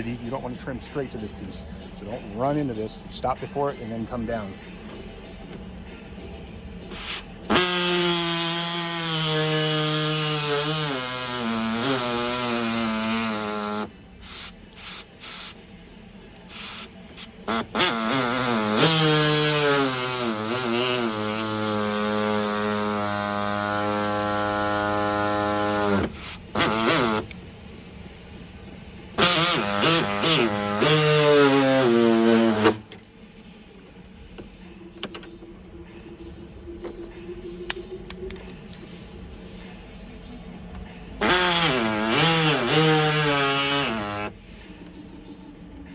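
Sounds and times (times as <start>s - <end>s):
power tool cutting plastic: 6.9s - 15.6s, 16.5s - 27.3s, 29.2s - 32.8s, 41.2s - 44.3s.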